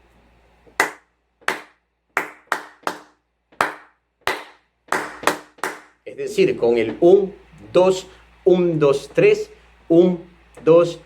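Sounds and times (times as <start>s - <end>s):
hand claps: 0.7s - 6.0s.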